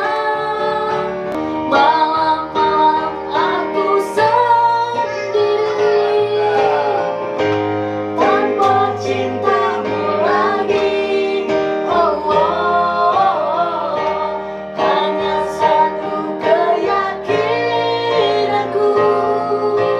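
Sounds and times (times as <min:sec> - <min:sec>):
woman singing: 0:00.0 - 0:07.1, 0:12.0 - 0:19.9
instrumental backing with guitar: 0:00.0 - 0:19.9.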